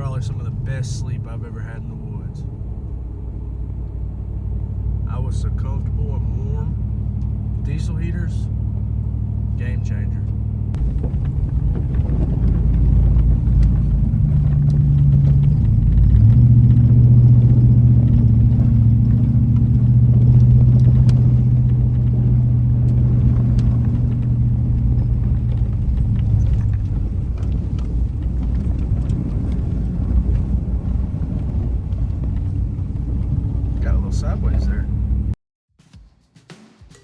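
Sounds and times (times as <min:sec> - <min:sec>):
car engine drone: 0:00.0 - 0:35.4
tyre and road rumble: 0:00.0 - 0:35.4.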